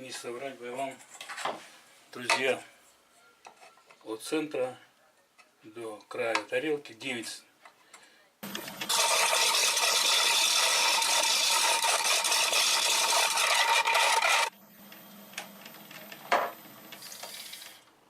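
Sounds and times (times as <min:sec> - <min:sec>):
wood lathe running: 0:08.8 - 0:14.5
lathe tool scraping wood: 0:08.9 - 0:14.5.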